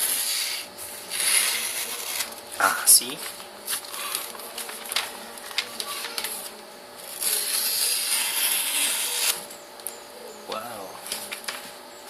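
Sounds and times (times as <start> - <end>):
knife slicing paper: 0.0 - 2.4, 3.7 - 9.5.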